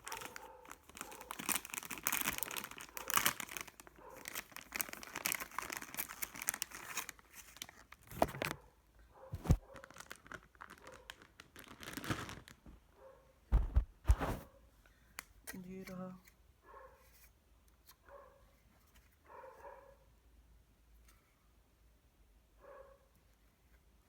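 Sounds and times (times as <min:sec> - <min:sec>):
plastic packaging crinkling: 0:00.0 - 0:08.6, 0:09.4 - 0:12.9
handling knocks and thumps: 0:09.3 - 0:09.6, 0:13.5 - 0:14.4.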